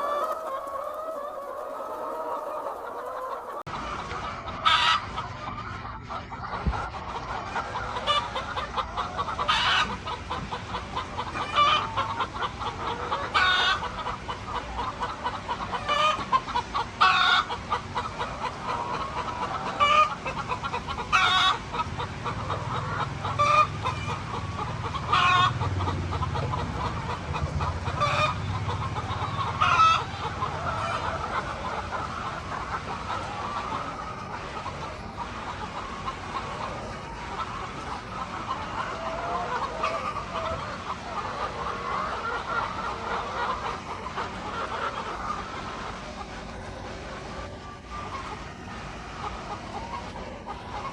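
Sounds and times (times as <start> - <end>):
loud short chicken calls: 0.0 - 3.7
chickens clucking: 0.0 - 50.9.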